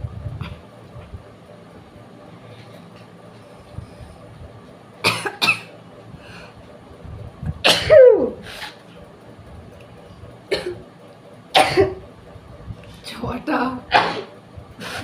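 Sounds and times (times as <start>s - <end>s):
person sneezing: 7.7s - 8.8s.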